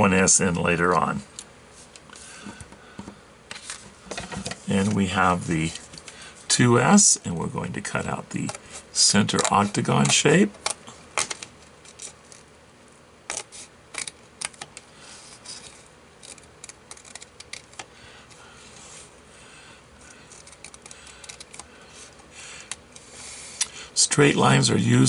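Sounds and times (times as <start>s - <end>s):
scissors snipping paper: 13.3s - 14.8s, 15.5s - 17.9s, 20.2s - 21.7s.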